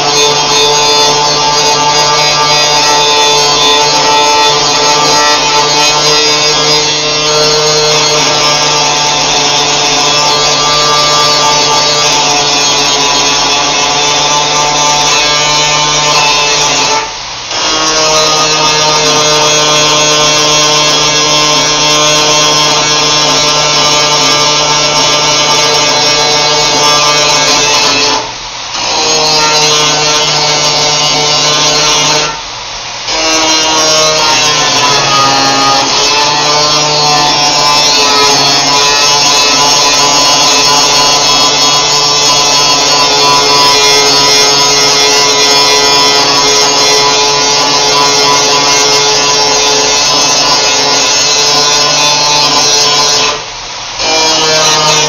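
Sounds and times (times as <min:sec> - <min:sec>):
electric grinder on sheet metal: 0:00.0 - 0:55.0.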